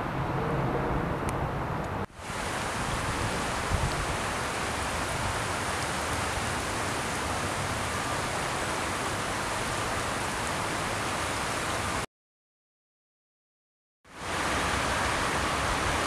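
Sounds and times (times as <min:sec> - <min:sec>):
water rushing: 0:02.1 - 0:12.1, 0:14.1 - 0:16.0.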